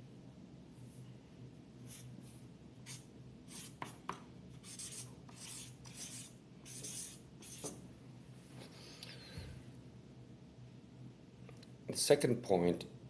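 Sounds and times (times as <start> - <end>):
pen scratching on paper: 2.9 - 4.0, 4.6 - 7.8.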